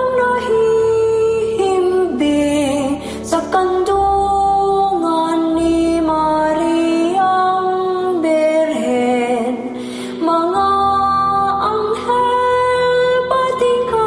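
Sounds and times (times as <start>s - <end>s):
slow music: 0.0s - 14.0s
woman singing: 0.0s - 14.0s.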